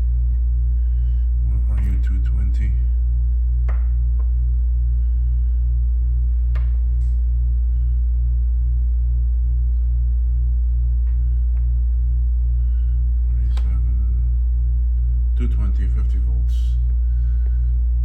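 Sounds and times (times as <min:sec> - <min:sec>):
air conditioner humming: 0:00.0 - 0:18.0.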